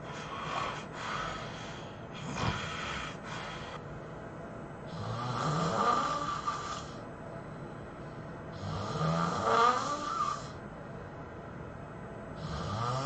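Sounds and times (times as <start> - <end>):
person snoring heavily: 0.0 - 3.8, 4.9 - 7.0, 8.6 - 10.6, 12.4 - 13.0.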